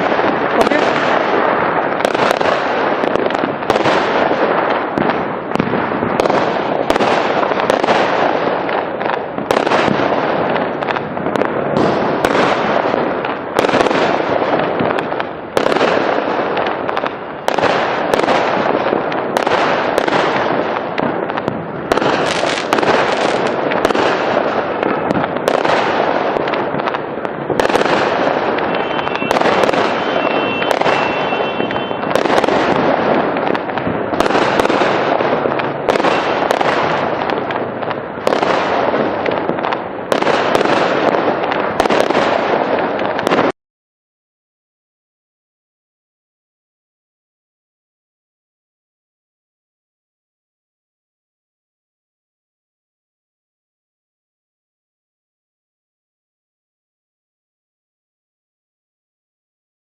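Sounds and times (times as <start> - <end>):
firework bursts: 0.0 - 43.6
fireworks crackling: 0.0 - 43.6.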